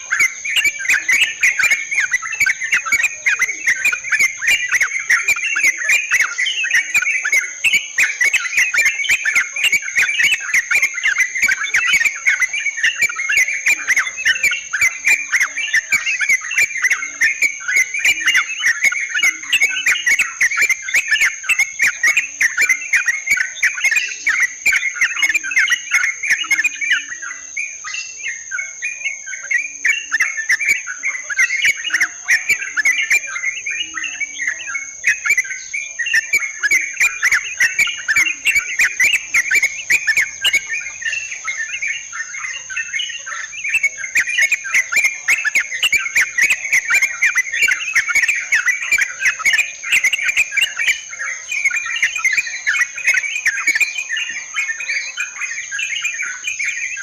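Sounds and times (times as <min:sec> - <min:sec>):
birds chattering and calling: 0:00.0 - 0:57.0.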